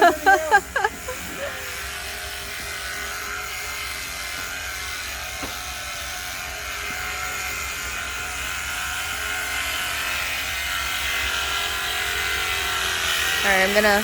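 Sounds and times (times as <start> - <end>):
water spray hissing: 0.0 - 1.9
electric pump motor buzzing: 0.0 - 14.0.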